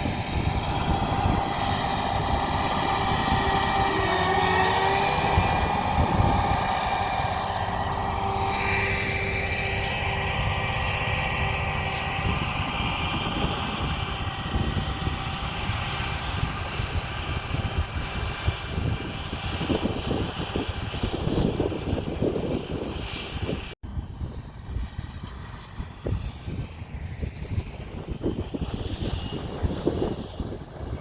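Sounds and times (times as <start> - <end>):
heavy machinery diesel rumble: 0.0 - 22.0
machine high whine: 0.0 - 23.8
wind on microphone: 0.0 - 31.0.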